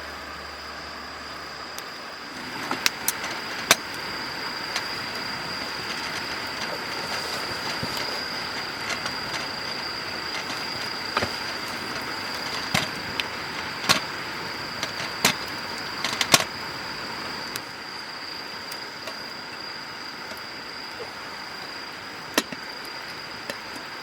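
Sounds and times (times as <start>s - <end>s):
campfire crackling: 0.0s - 24.0s
steady hiss: 0.0s - 24.0s
sharp pops from fire: 1.8s - 17.8s.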